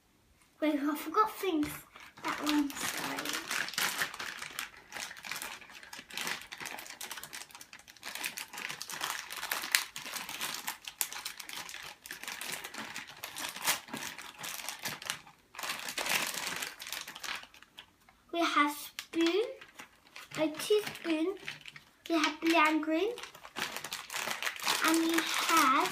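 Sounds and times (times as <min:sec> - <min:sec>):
plastic crinkling and rustling: 0:01.5 - 0:25.9.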